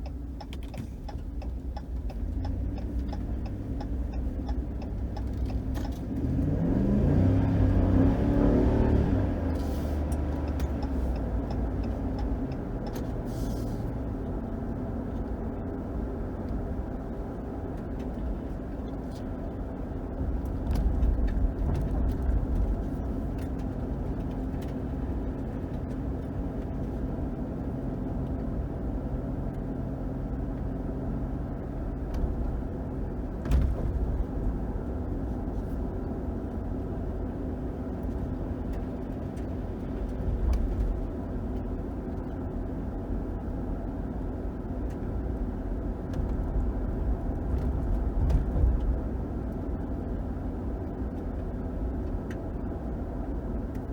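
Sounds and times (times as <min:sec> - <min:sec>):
tyre and road rumble: 0:17.8 - 0:27.2, 0:44.5 - 0:53.9.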